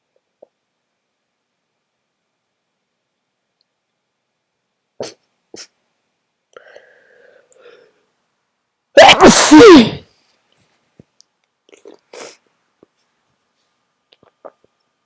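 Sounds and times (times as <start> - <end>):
loud human sneeze: 5.0 - 5.8, 9.0 - 10.0.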